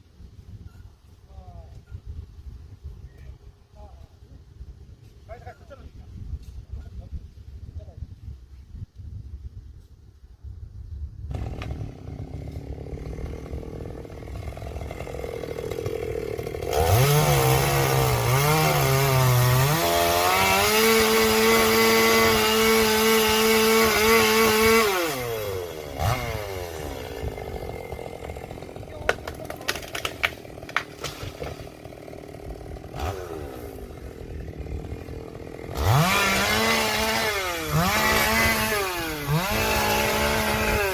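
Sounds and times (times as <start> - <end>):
chainsaw idling and revving: 11.3 - 40.9.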